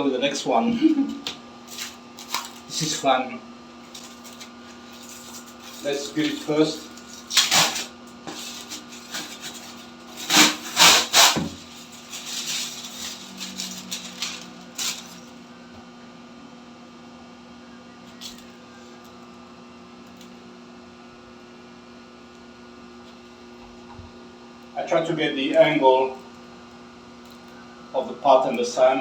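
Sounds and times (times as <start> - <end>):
steady electrical hum: 0.0 - 29.0
scraping on tile: 7.1 - 15.2.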